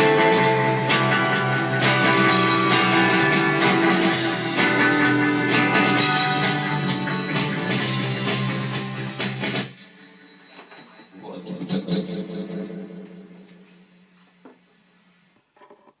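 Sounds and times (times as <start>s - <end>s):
guitar rock song: 0.0s - 9.5s
thin high whistle-like tone: 2.2s - 15.4s
low ringing note: 4.6s - 15.2s.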